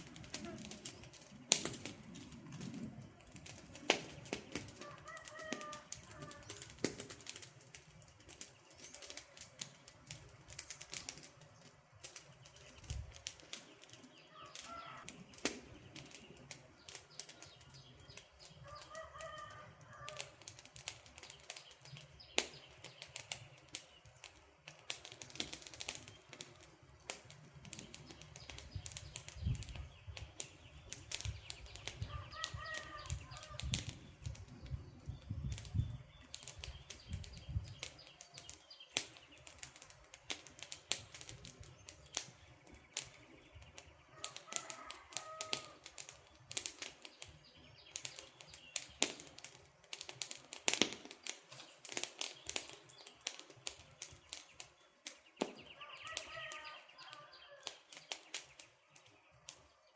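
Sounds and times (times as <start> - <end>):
campfire crackling and popping: 0.0 - 59.9
bird chirping: 51.5 - 59.9.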